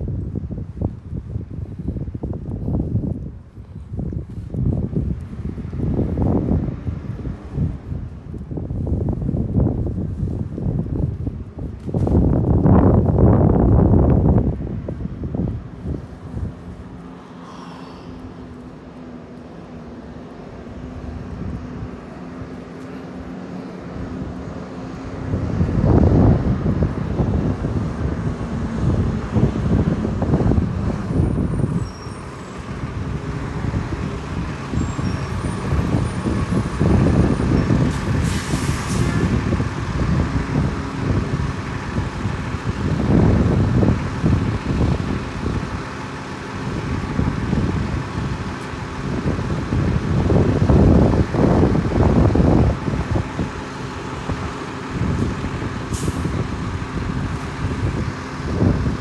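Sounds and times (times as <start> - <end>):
wind buffeting microphone: 0.0 - 59.0
short hisses: 17.1 - 18.5.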